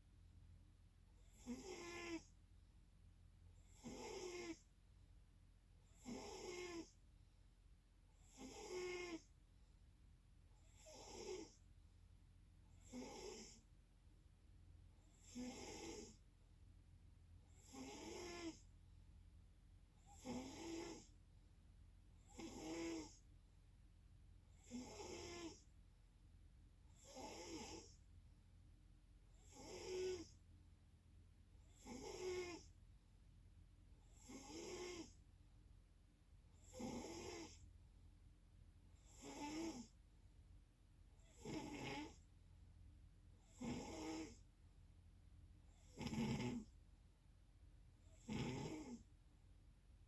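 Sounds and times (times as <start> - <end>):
person snoring: 1.4 - 2.3, 41.4 - 42.2, 43.6 - 44.4, 45.9 - 46.7, 48.2 - 49.0.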